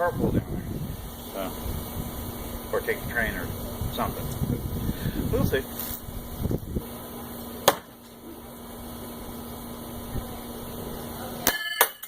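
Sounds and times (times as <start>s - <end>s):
metallic clinks ringing: 11.4s - 12.0s.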